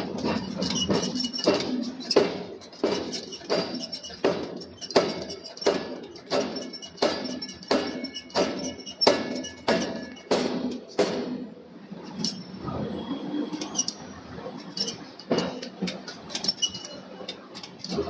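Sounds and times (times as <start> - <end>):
forging hammer blows on steel: 0.0 - 11.5.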